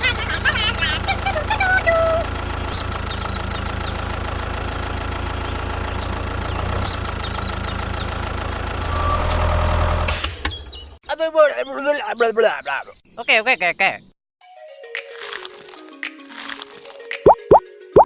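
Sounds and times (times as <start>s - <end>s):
tractor engine idling: 0.0s - 9.0s.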